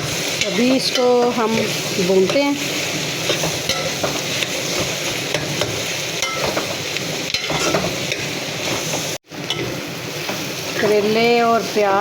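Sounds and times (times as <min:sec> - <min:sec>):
utensil scraping a pan: 0:00.0 - 0:09.1
vegetables sizzling in hot oil: 0:00.0 - 0:12.0.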